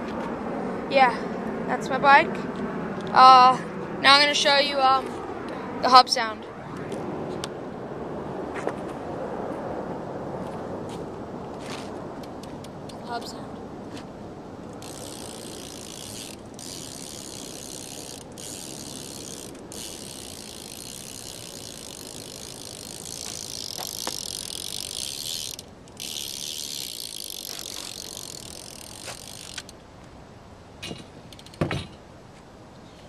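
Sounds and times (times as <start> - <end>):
bicycle hub freewheeling buzz: 14.6 - 29.7.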